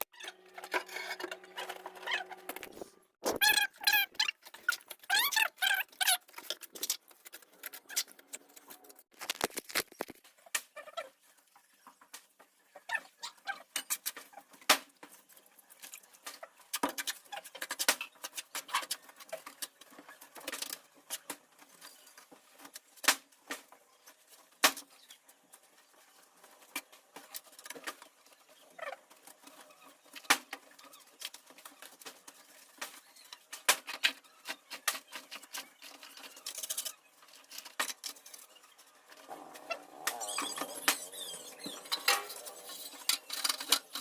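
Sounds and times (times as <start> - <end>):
hard objects clicking and scraping: 0.0 - 10.7, 26.2 - 44.0.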